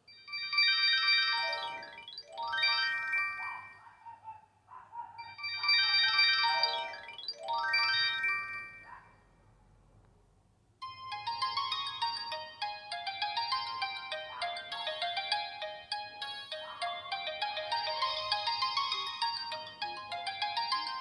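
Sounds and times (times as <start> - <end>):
mobile phone ringtone melody: 0.0 - 3.8, 5.2 - 8.9, 10.8 - 21.0.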